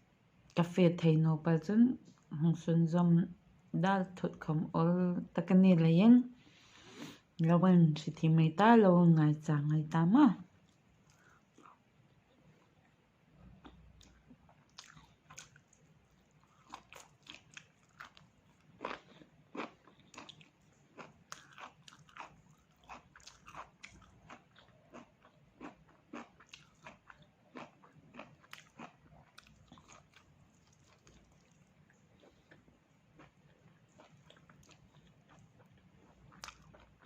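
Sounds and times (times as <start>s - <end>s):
person chewing crunchy meat: 10.6s - 11.8s, 13.6s - 37.0s.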